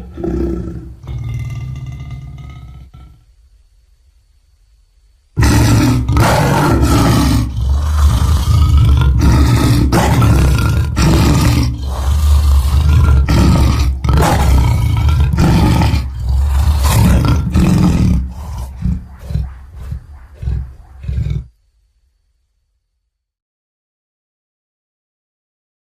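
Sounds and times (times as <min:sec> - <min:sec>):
monster roar: 0:05.4 - 0:21.5.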